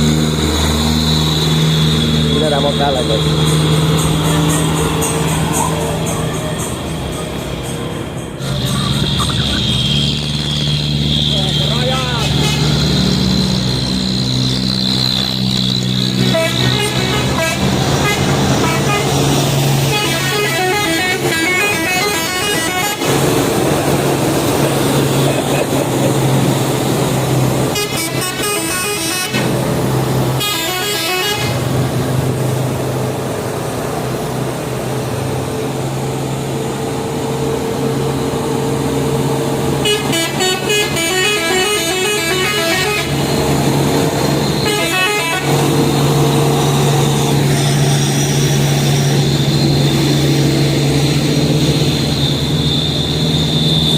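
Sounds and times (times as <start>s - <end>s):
musical truck air horns: 1.1s - 23.4s, 27.5s - 31.9s, 39.8s - 50.0s.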